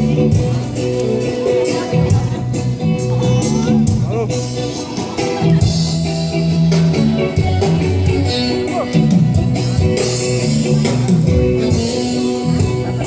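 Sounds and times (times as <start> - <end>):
live reggae band over speakers: 0.0 - 13.0.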